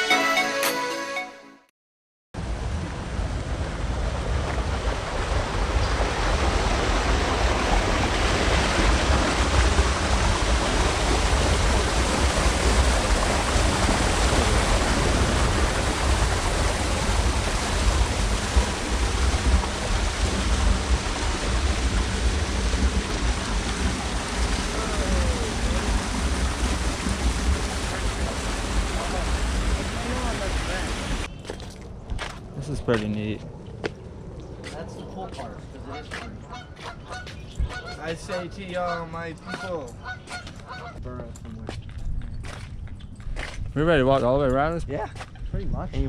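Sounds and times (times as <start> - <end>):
wind on microphone: 2.5 - 31.3, 35.9 - 38.1, 41.5 - 46.0.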